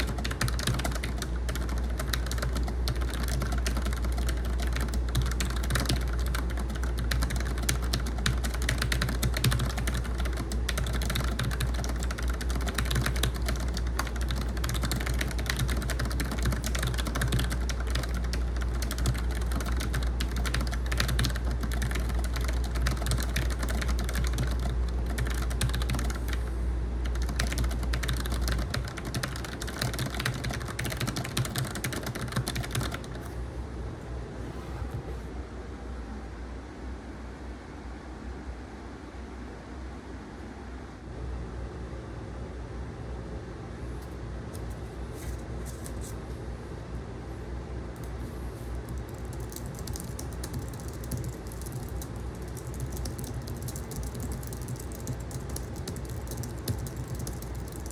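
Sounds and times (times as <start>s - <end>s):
fast typing on keyboard: 0.0s - 26.4s, 27.0s - 33.3s, 48.0s - 57.9s
air conditioner hum: 0.0s - 57.9s.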